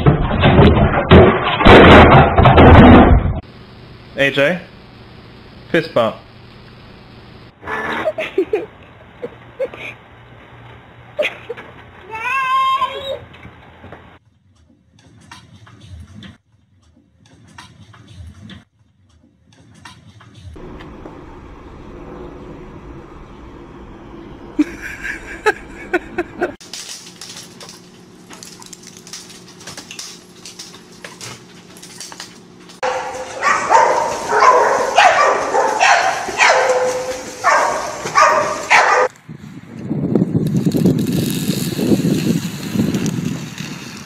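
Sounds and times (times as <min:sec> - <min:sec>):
dog pitched repeated cries: 0:32.8 - 0:39.1.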